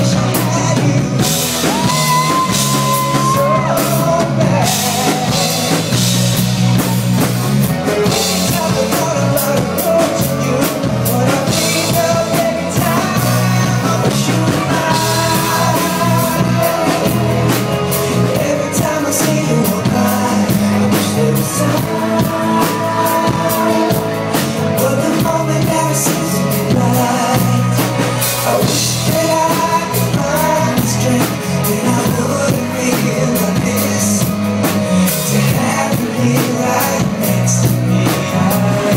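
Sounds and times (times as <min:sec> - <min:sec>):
live pop-rock band: 0:00.0 - 0:38.9.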